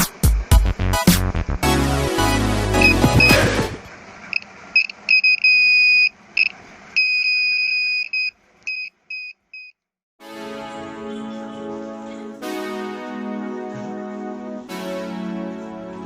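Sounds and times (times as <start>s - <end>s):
keyboard music: 0.0s - 3.9s, 10.2s - 16.0s
buzzer beeping: 2.3s - 3.5s, 4.3s - 9.8s.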